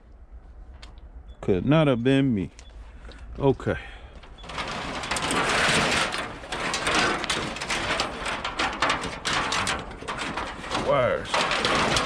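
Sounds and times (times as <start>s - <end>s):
scrap metal scraping and rattling: 4.2s - 12.0s.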